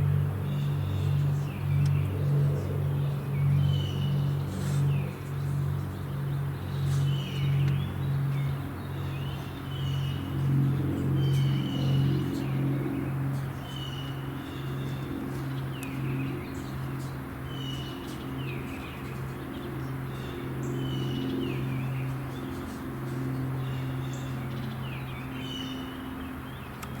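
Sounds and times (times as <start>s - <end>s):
aircraft piston engines humming: 0.0s - 27.0s
bird singing: 2.8s - 26.9s.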